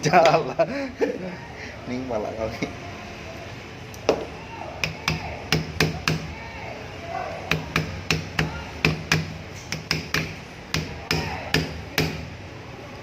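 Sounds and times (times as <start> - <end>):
hammer tapping on metal: 4.1 - 6.3, 7.5 - 12.3.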